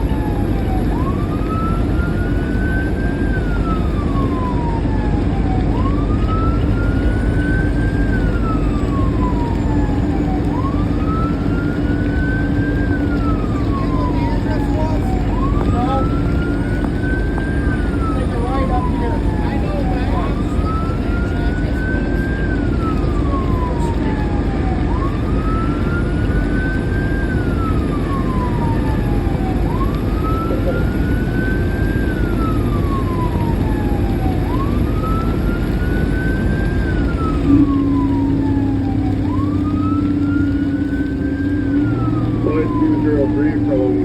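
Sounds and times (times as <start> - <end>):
fire engine wail siren: 0.0 - 44.0
road noise: 0.0 - 44.0
truck engine rumble: 0.0 - 44.0
steady low horn tone: 34.5 - 44.0.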